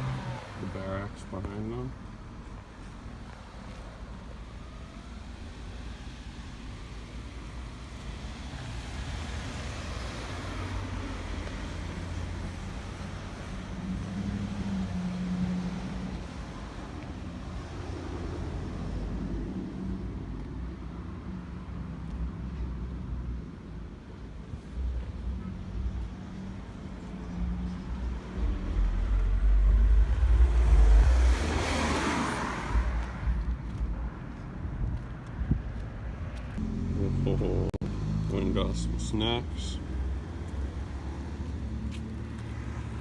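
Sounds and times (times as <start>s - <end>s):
low motor rumble: 27.4s - 39.3s
low hum: 27.5s - 34.8s.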